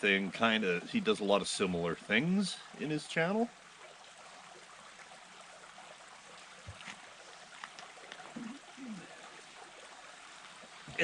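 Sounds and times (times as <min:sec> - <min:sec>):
faint background hiss: 0:00.0 - 0:11.0
short low vocal sound: 0:08.4 - 0:09.2.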